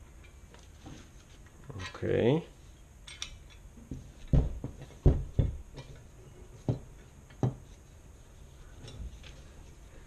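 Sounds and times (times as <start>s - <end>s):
metal parts knocking and clinking: 3.0s - 3.7s.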